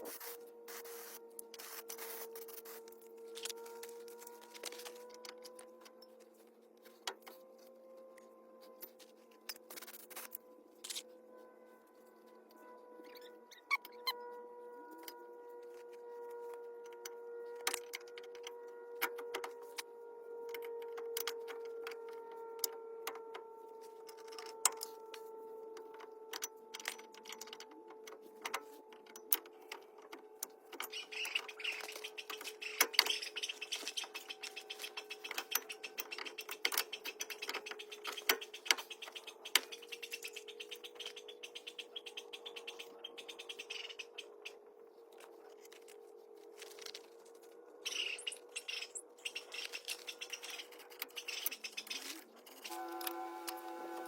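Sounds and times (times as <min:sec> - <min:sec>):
steady hum: 0:52.7 - 0:54.0.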